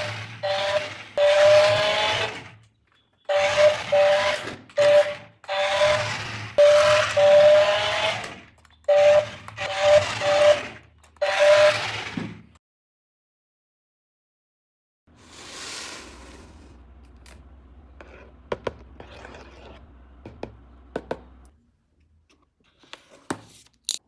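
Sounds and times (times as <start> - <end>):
toy car motor whining: 0.0 - 2.6, 3.3 - 12.4.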